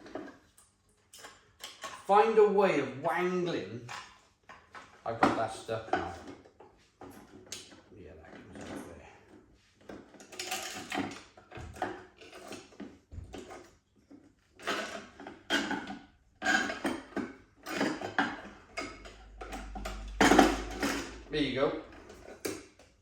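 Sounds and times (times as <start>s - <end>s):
metal parts clicking and rattling: 10.0s - 13.5s, 14.6s - 22.9s.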